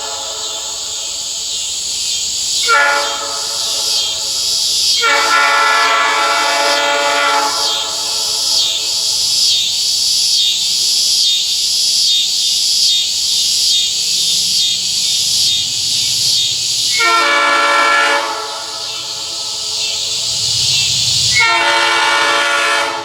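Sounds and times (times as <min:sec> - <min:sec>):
locomotive air horn blast: 0:00.0 - 0:01.2, 0:02.6 - 0:09.1, 0:16.9 - 0:20.0, 0:21.3 - 0:23.0
pulsing high hiss: 0:00.0 - 0:23.0.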